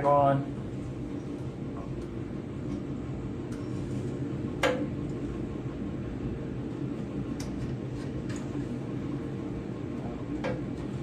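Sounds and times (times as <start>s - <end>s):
mechanical hum: 0.0s - 11.0s.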